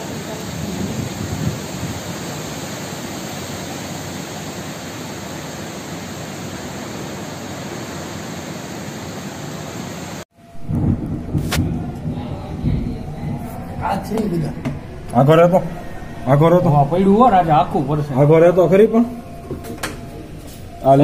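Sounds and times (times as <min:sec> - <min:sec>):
strong wind: 0:00.0 - 0:09.3, 0:10.0 - 0:20.8
heavy rain: 0:00.0 - 0:21.0.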